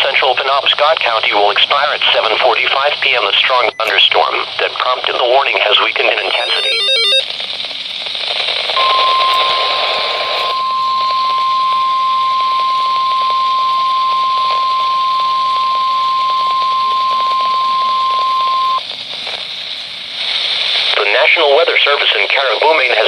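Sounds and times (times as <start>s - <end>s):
radio static hiss: 0.0s - 23.0s
steady high-pitched alert beep: 6.2s - 7.2s.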